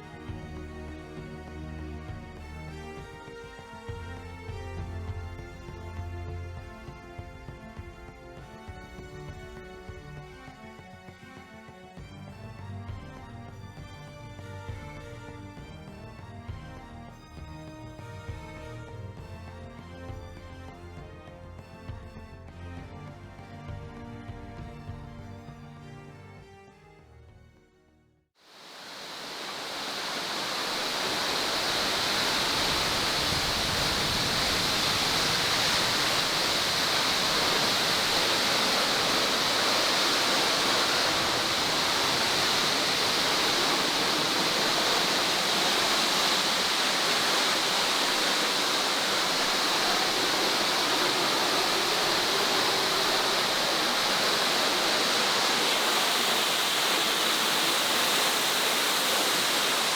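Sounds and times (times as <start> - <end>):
waterfall pouring: 28.5 - 59.9.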